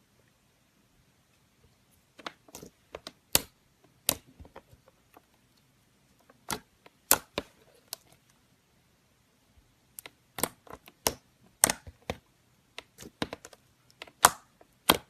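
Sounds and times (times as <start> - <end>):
slime squishing: 2.0 - 8.4, 9.9 - 15.0.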